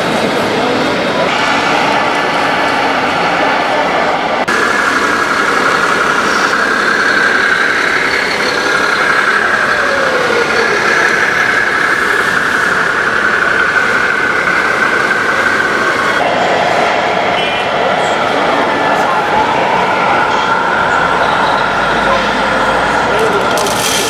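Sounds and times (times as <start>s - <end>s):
truck engine sound module: 1.3s - 16.2s.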